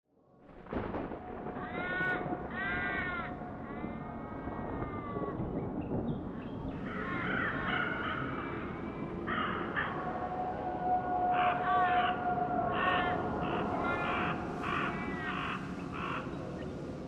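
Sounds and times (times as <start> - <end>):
crows cawing: 1.6 - 5.4, 6.8 - 10.5, 11.2 - 16.4.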